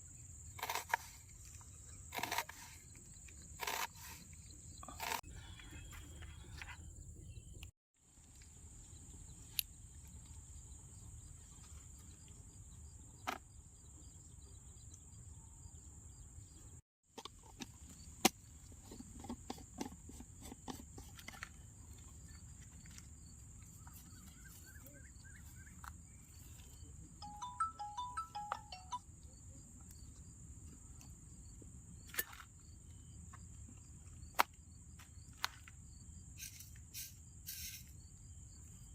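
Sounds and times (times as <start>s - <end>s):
insects chirping: 0.0s - 7.7s, 29.2s - 38.9s.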